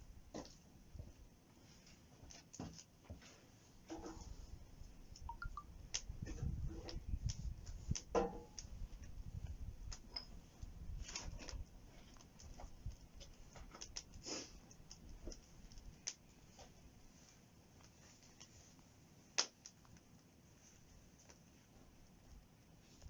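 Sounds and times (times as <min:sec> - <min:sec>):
campfire crackling and popping: 0:04.7 - 0:23.0.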